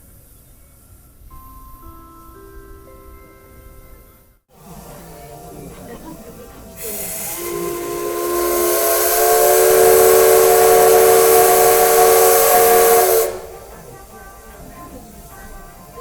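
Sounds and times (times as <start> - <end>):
steam hiss: 4.5 - 16.0
steam locomotive whistle: 6.7 - 16.0.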